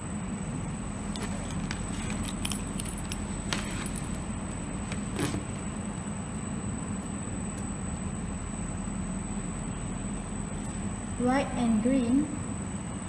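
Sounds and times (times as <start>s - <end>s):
low background hum: 0.0s - 13.0s.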